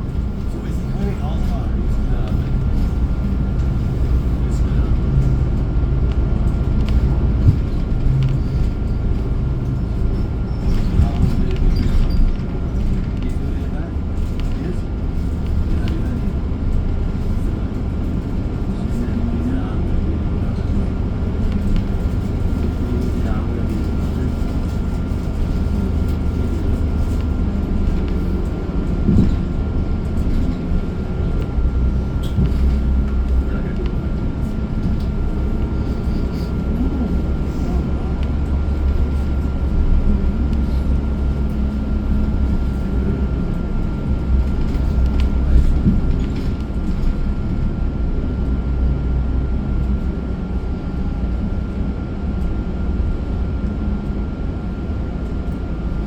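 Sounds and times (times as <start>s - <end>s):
bus engine and road drone: 0.0s - 56.0s
rattles and knocks: 2.1s - 18.4s.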